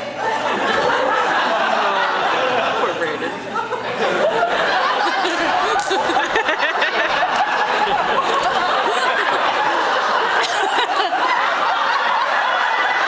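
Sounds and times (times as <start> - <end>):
audience laughing: 0.0 - 13.0.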